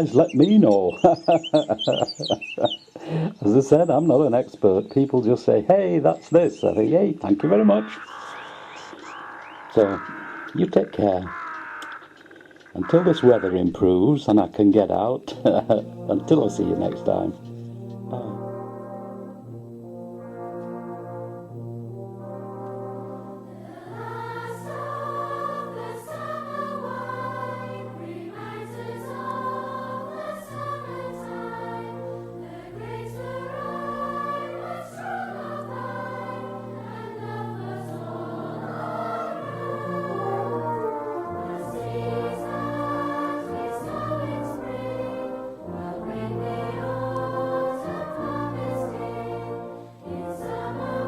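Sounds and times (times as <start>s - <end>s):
sustained brass: 15.4s - 47.1s
slow choral singing: 15.4s - 51.0s.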